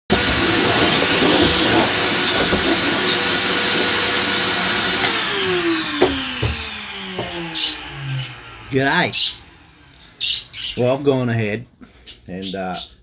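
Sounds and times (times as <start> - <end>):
electric motor whining: 0.0 - 11.2
light knocks: 0.1 - 8.4.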